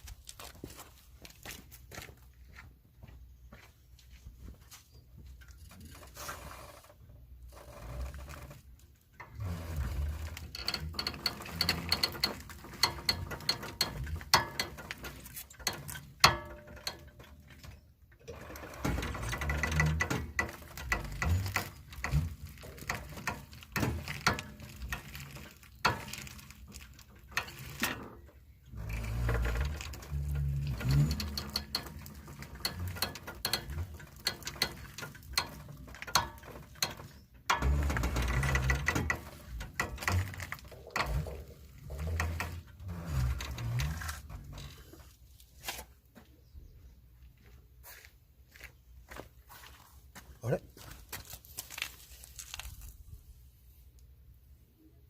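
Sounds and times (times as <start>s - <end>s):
ratchet clicks: 9.2s - 17.2s, 28.8s - 44.7s
hand tool clicking and knocking: 10.5s - 17.7s, 29.3s - 44.7s.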